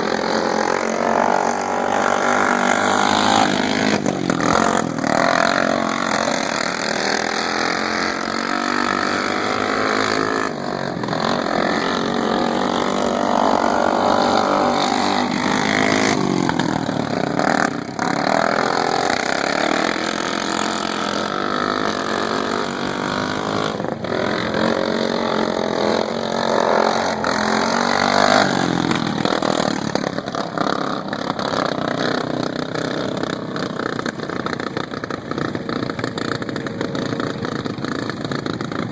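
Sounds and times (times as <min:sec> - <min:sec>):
racing lawn mower engine: 0:00.0 - 0:38.9.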